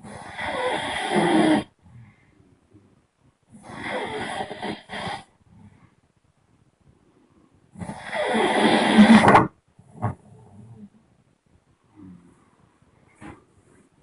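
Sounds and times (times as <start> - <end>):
person snoring loudly: 0.0 - 1.7, 7.8 - 9.3.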